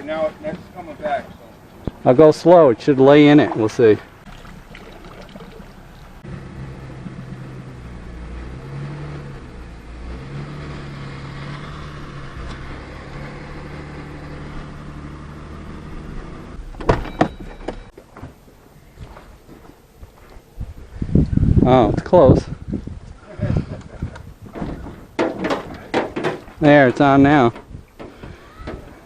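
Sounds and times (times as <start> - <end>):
sharp knocks: 24.6 - 26.5.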